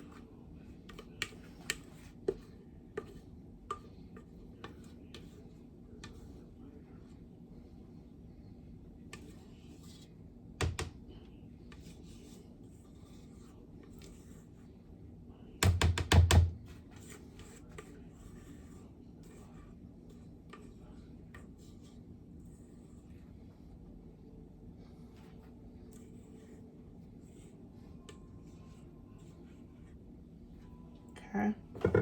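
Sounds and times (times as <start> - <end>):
utensil scraping batter in bowl: 0.0 - 7.2, 9.0 - 10.2, 11.6 - 14.7, 16.7 - 23.3, 25.1 - 30.4.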